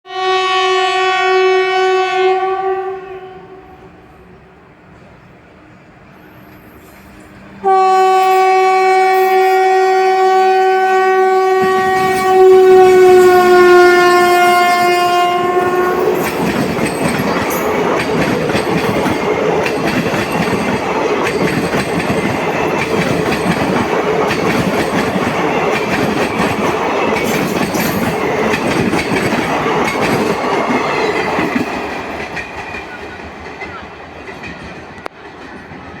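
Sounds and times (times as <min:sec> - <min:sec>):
locomotive horn blast: 0:00.1 - 0:04.1, 0:07.6 - 0:16.4
train rumbling on rails: 0:01.7 - 0:36.0.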